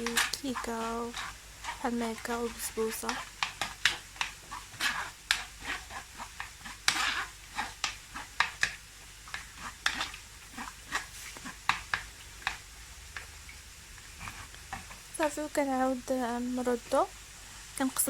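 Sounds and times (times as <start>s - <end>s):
utensil scrape: 0.0s - 12.0s, 14.2s - 15.0s.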